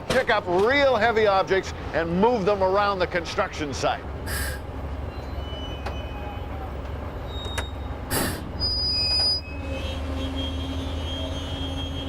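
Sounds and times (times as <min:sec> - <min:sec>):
high squeal: 0:05.1 - 0:12.0.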